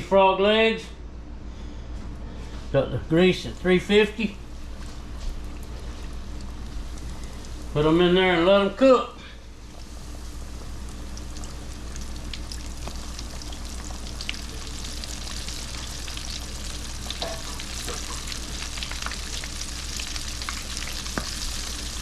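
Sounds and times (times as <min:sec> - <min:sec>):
frog legs deep-frying in grease: 0:03.4 - 0:08.0, 0:09.5 - 0:22.0.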